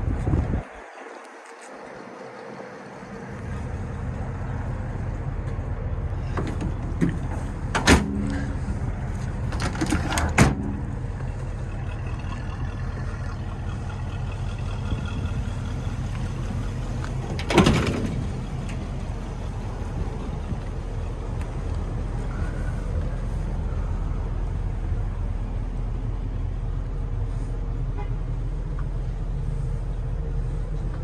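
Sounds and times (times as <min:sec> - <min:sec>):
engine running: 0:01.3 - 0:31.0.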